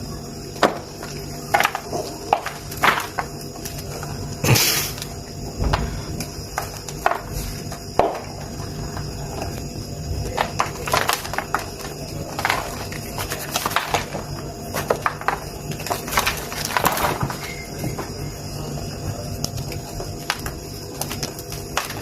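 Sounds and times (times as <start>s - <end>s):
chalk crumbling by hand: 10.3s - 18.1s.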